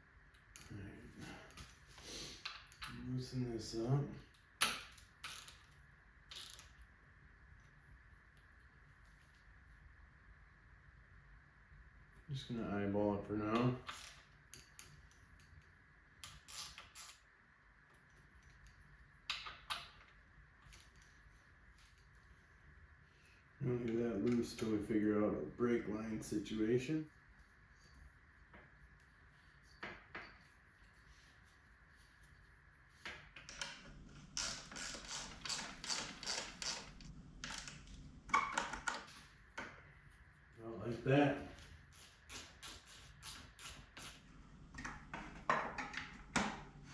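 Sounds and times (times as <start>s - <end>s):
faint room noise: 0.0s - 46.9s
tools and bike parts clicking: 4.6s - 6.8s, 13.6s - 17.2s, 18.1s - 21.2s, 34.4s - 39.7s.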